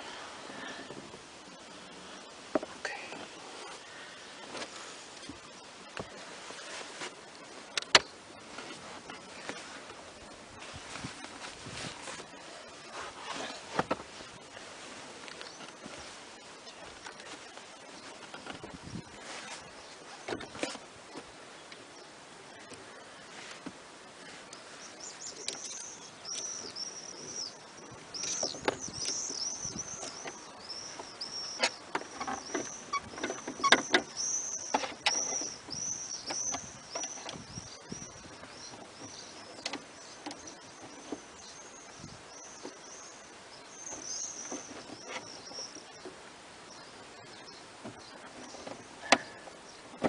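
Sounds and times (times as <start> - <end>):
bird chirping: 24.2 - 50.0.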